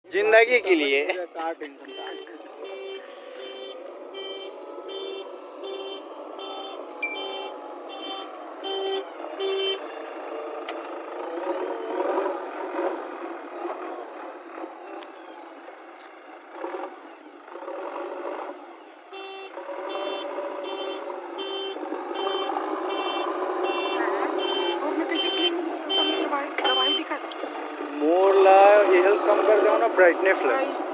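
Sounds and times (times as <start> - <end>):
reversing alarm beeping: 1.9 - 10.3.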